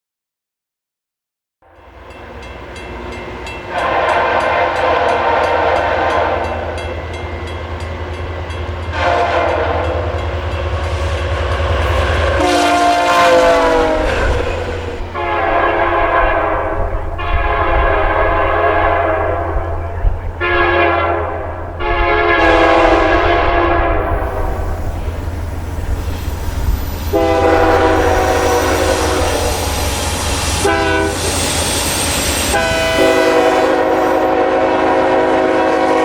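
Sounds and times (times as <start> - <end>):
passing train rumble: 1.6 - 36.0
locomotive air horn blasts: 3.6 - 7.0, 8.8 - 25.2, 26.6 - 31.8, 32.4 - 36.0.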